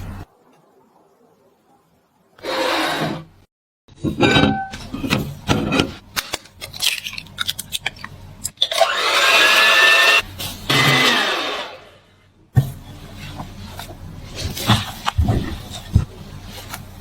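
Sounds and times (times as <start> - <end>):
whirring appliance with whine: 7.5 - 12.1.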